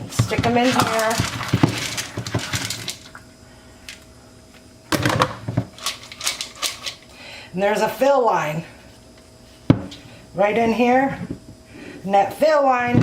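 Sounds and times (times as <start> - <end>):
beans clattering into plastic container: 0.2 - 3.1.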